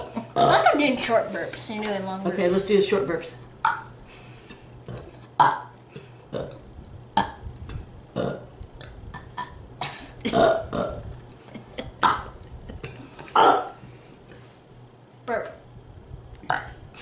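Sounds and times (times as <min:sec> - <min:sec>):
people burping: 0:00.0 - 0:00.7, 0:04.9 - 0:05.7, 0:08.2 - 0:08.5, 0:09.1 - 0:11.0, 0:11.8 - 0:13.8, 0:16.5 - 0:16.8.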